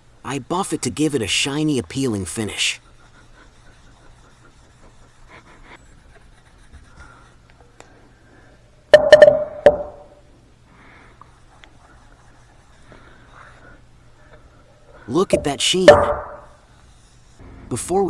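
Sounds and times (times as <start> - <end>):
cloth buffing wooden board: 1.6 - 7.4
sharp knocks with ring: 9.0 - 10.2, 15.3 - 16.5.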